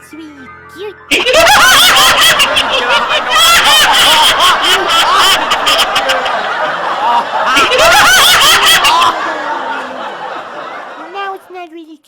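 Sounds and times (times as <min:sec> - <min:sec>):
canned crowd laughter: 0:01.1 - 0:11.5.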